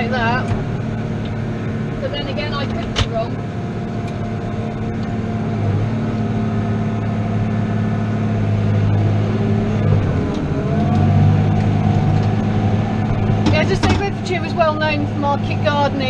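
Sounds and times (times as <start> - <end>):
tractor diesel engine running: 0.0 - 16.0.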